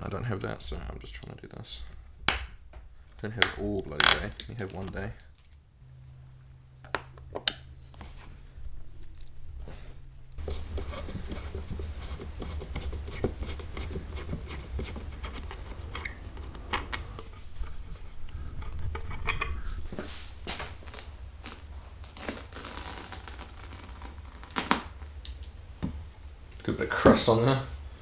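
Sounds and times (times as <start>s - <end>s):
steady low hum: 0.0s - 28.0s
tool clicks and scrapes on wood: 10.4s - 20.6s.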